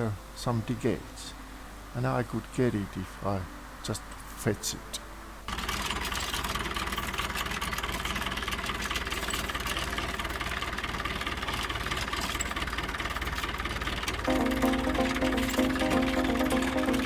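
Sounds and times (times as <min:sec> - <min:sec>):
engine running: 0:05.5 - 0:17.0.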